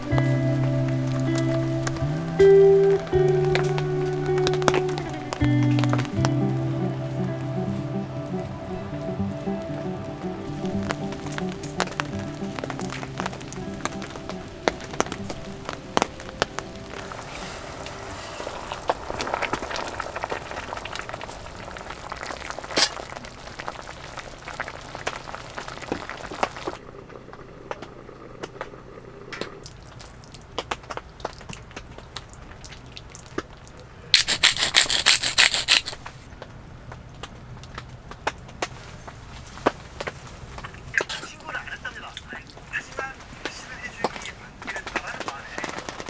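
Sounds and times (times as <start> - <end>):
rain drops tapping: 0.0 - 26.8, 29.6 - 46.0
light hiss: 34.2 - 36.3.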